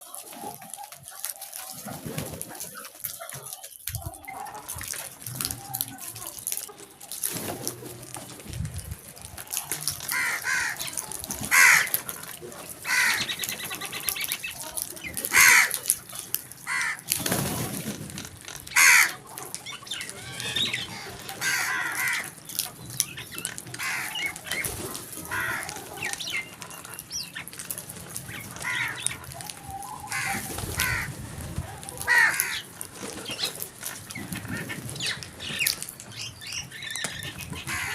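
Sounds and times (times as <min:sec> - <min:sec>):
crows cawing: 0:10.1 - 0:12.0, 0:12.8 - 0:13.3, 0:15.3 - 0:15.8, 0:16.6 - 0:17.1, 0:18.7 - 0:19.2, 0:20.2 - 0:22.4, 0:23.8 - 0:24.6, 0:25.2 - 0:25.8, 0:28.5 - 0:29.2, 0:30.0 - 0:31.1, 0:32.0 - 0:32.7, 0:37.7 - 0:37.9.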